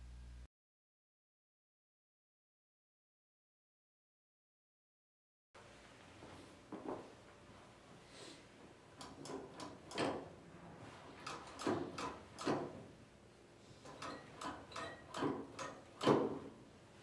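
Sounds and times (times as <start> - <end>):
dispenser handles clicking and clacking: 9.0 - 10.4, 11.1 - 12.8, 13.8 - 16.6.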